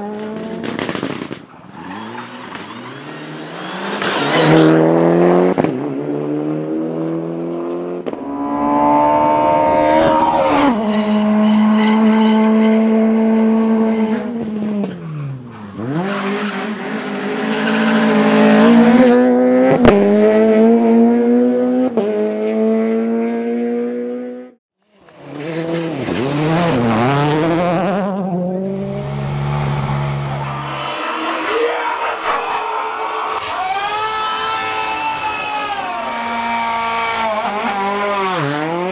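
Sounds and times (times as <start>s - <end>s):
rally car engines revving: 0.0s - 24.4s, 25.0s - 38.9s
tyre squeal: 9.5s - 13.1s, 16.0s - 18.9s, 29.7s - 38.0s.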